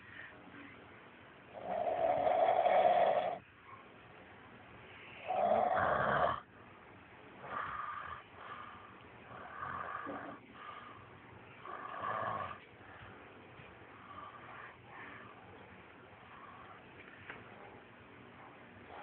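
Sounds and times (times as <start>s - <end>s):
man snoring: 1.6s - 3.4s, 5.2s - 6.4s, 11.6s - 12.6s.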